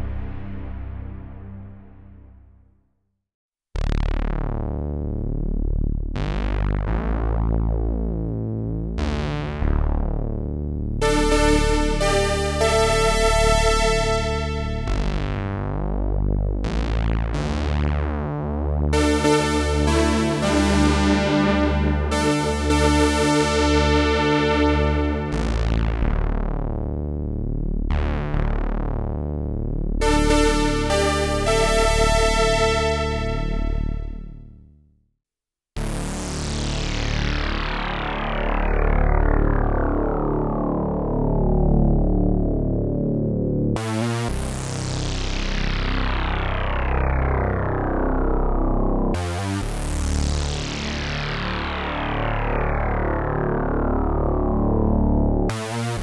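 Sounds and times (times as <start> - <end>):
synthesizer low sustained chords: 0.0 - 2.6, 3.8 - 34.5, 35.8 - 56.0
buzzy synthesizer held notes: 11.0 - 15.6, 18.9 - 26.6, 30.0 - 34.4.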